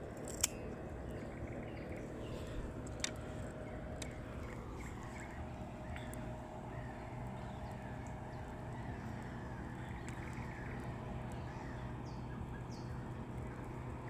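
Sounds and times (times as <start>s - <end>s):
steady low rumble: 0.0s - 14.0s
faint bird calls: 1.0s - 13.8s.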